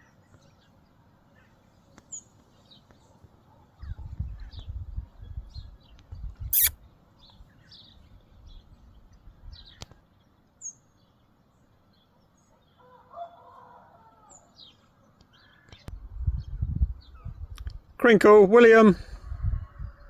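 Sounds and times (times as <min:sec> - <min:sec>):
small birds chirping: 0:03.8 - 0:11.2.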